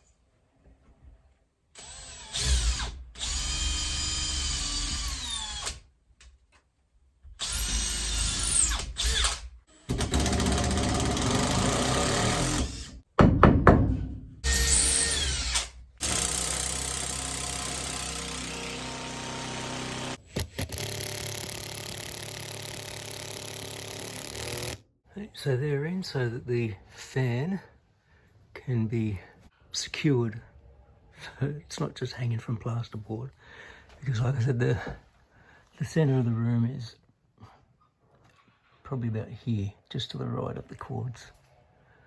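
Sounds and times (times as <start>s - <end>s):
power drill driving screws: 1.8s - 5.8s, 7.4s - 13.0s, 14.4s - 24.8s.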